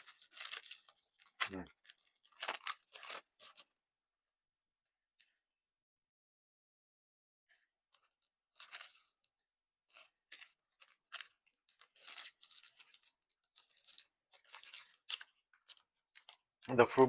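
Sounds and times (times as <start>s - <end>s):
chewing sticky candy: 0.0s - 3.7s, 7.9s - 17.0s.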